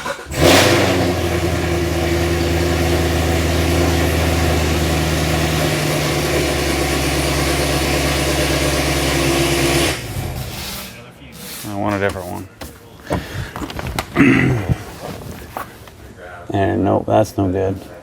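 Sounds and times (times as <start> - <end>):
car engine starting and idling: 0.0 - 10.6.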